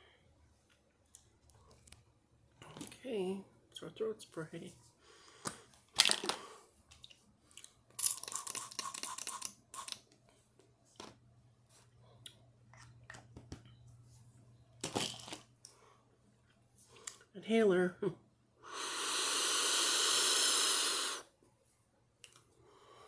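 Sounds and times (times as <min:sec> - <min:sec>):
spray hissing: 0:18.8 - 0:21.2.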